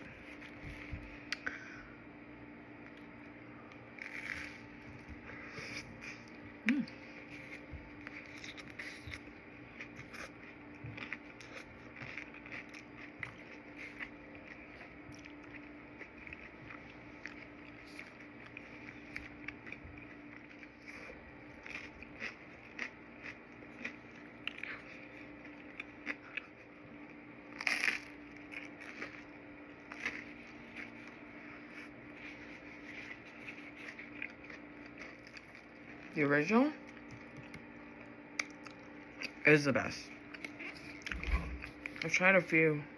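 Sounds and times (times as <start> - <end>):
steady low hum: 0.0 - 42.9
crunchy bites and chewing: 2.8 - 36.2.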